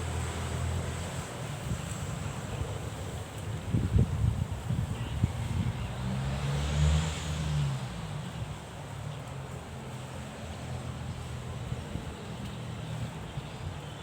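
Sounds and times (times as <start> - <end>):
wind on microphone: 3.5 - 6.0.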